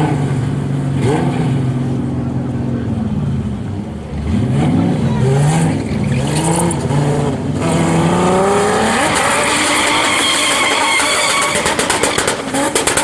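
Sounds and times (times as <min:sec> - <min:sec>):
car engine revving: 0:00.0 - 0:13.0.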